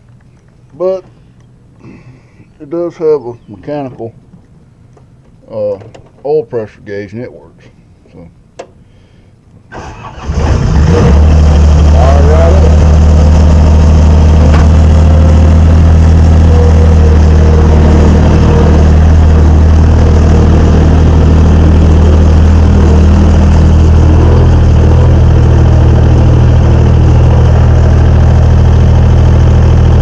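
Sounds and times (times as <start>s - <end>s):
skid steer engine idling: 11.2s - 30.0s.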